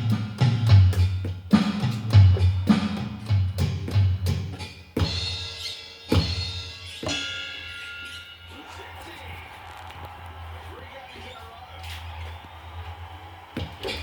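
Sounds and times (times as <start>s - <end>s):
cymbal strikes ringing: 5.0s - 8.6s.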